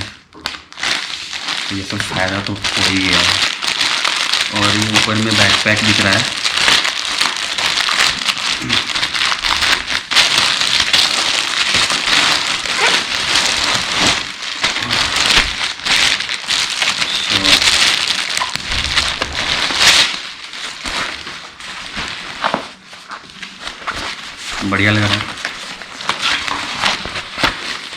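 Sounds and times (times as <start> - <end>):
plastic wrapping crinkling: 0.0 - 27.9.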